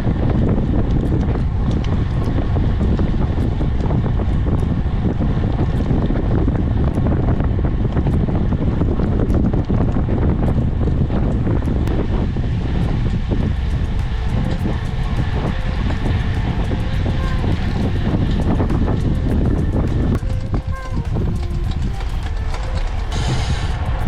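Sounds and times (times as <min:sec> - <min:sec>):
wind buffeting microphone: 0:00.0 - 0:24.0.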